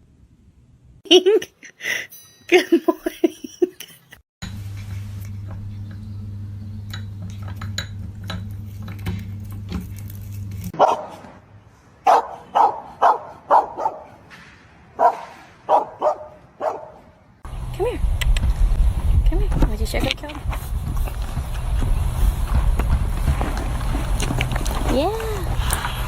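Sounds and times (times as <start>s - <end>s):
low hum: 4.4s - 10.7s
dog barking: 10.8s - 11.3s, 12.0s - 14.2s, 15.0s - 17.2s.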